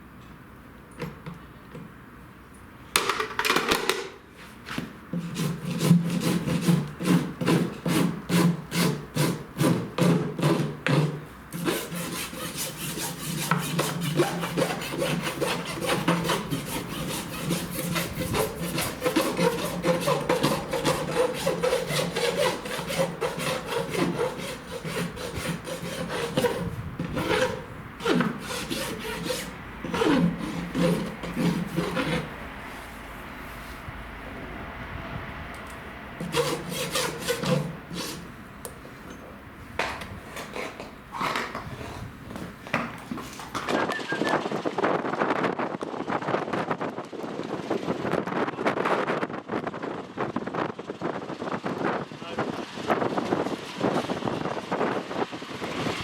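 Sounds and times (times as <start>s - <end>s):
rasp scraping hoof: 4.7s - 32.3s, 36.2s - 38.3s, 39.9s - 43.7s.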